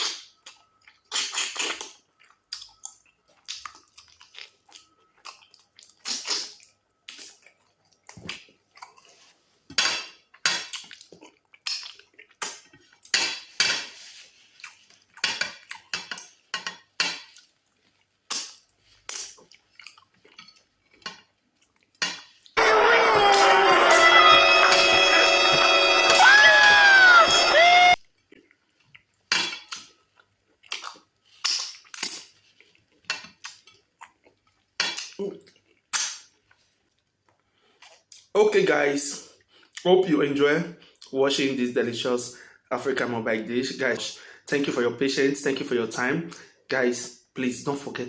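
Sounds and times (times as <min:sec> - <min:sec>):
chewing and mouth smacking: 0:00.0 - 0:09.3, 0:10.6 - 0:13.1, 0:14.4 - 0:16.4, 0:17.2 - 0:22.6, 0:28.2 - 0:38.3
music: 0:22.6 - 0:28.0.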